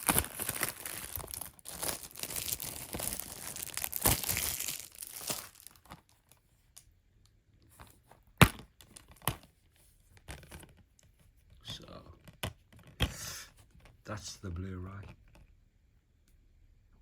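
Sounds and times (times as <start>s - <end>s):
plastic wrapping crinkling and tearing: 0.0s - 6.4s.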